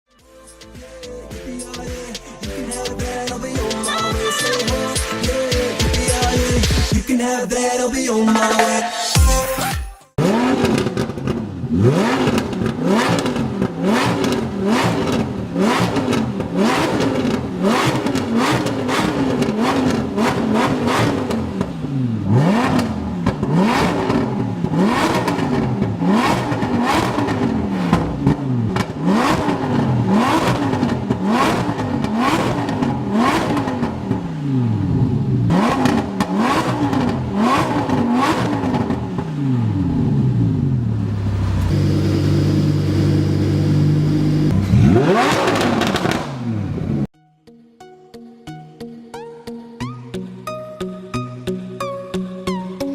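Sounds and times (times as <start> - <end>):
car engine revving: 10.2 - 47.1
exhaust crackles and pops: 10.3 - 15.3, 22.7 - 34.2, 44.5 - 46.5.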